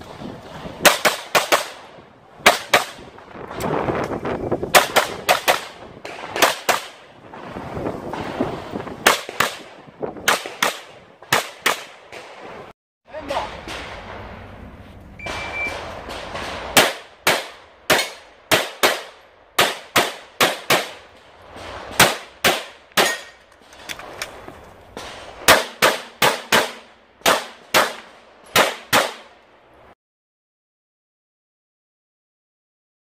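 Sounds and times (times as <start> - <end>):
short high beep: 15.2 - 15.8.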